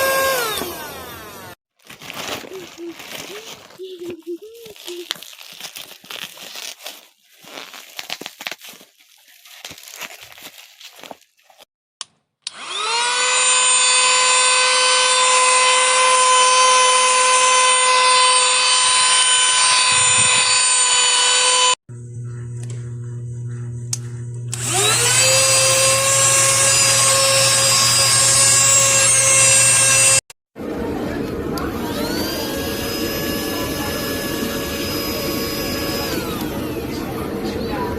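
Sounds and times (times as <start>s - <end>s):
handheld vacuum motor whine: 0.0s - 1.6s, 12.5s - 30.2s, 31.6s - 37.2s
low steady hum: 21.9s - 24.6s.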